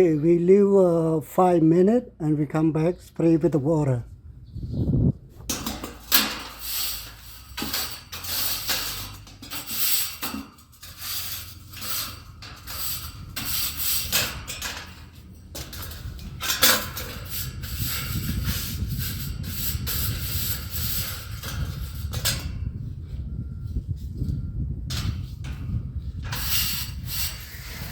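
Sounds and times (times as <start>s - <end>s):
hose water spraying on coils: 5.5s - 22.4s, 26.2s - 27.9s.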